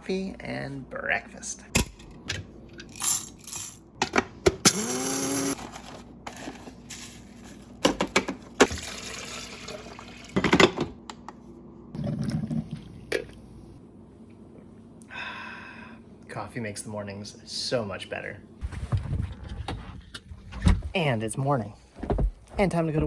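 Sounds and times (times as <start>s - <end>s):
water filling a container: 8.6s - 10.4s.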